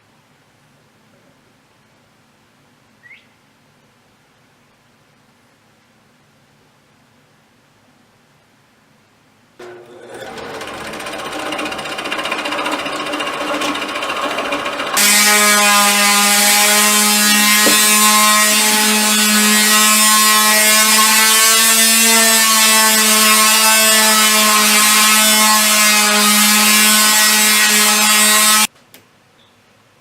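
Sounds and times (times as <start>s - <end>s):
power tool motor running: 9.6s - 28.7s.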